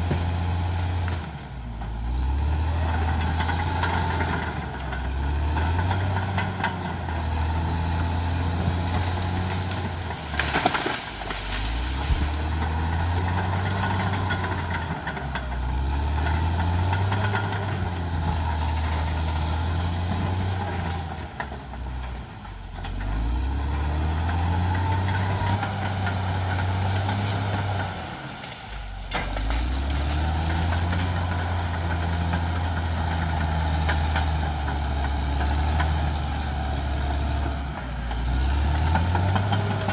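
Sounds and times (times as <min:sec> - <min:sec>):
bulldozer diesel engine running: 0:00.0 - 0:39.9
sharp crack: 0:10.2 - 0:12.7.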